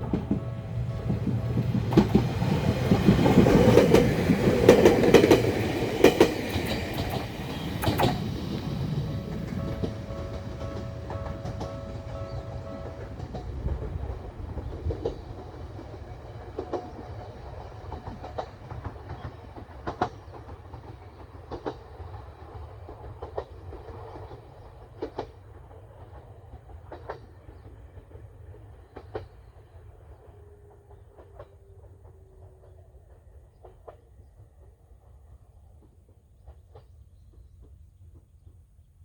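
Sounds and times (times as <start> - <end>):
wheel clicks on rail joints: 0.0 - 17.3
electric train rumble: 0.0 - 37.0.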